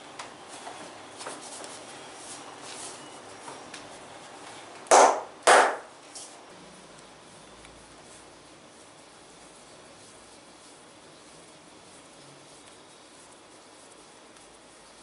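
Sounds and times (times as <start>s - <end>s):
hand slaps on a back: 4.9s - 5.9s.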